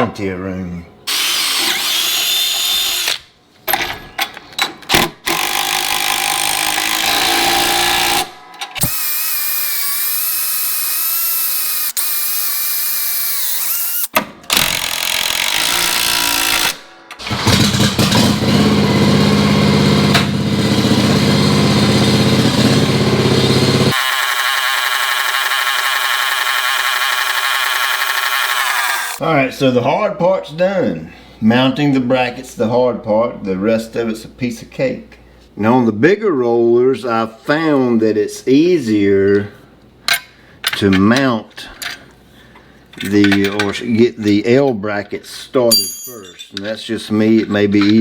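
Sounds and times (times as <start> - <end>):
power drill motor whine: 1.1 - 3.2, 5.3 - 16.8, 23.9 - 29.2.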